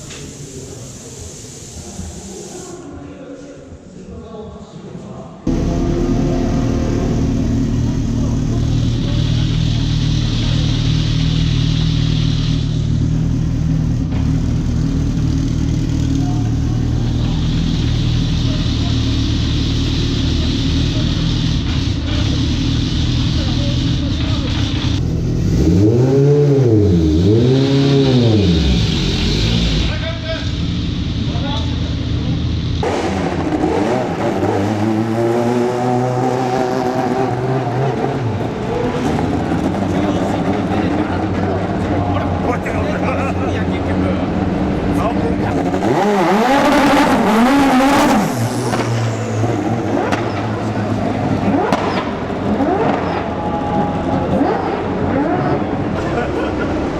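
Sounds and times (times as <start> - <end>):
hiss: 0.0 - 2.9, 8.6 - 13.0
race car engine rumbling: 5.5 - 56.9.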